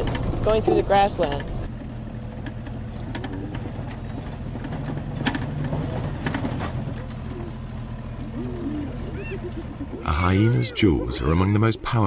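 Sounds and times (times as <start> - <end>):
engine running at low hum: 0.0 - 12.0.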